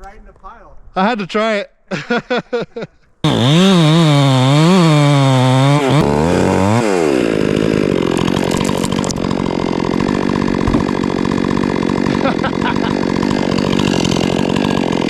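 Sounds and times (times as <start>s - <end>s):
chainsaw engine revving: 3.2s - 15.0s.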